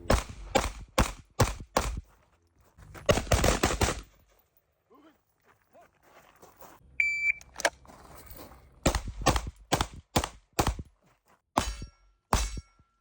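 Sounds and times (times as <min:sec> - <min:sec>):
gunshots: 0:00.0 - 0:02.0, 0:03.1 - 0:04.1, 0:08.8 - 0:10.9
shot timer beep: 0:07.0 - 0:07.5.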